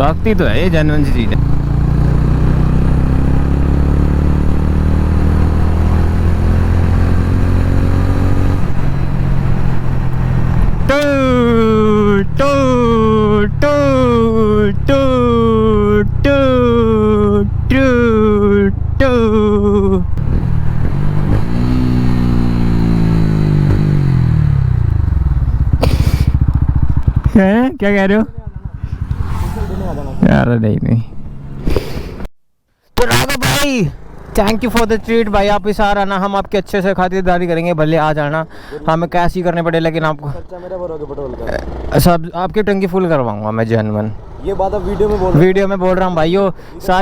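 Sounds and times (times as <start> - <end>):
motorcycle engine running: 0.0 - 32.2, 33.4 - 36.2.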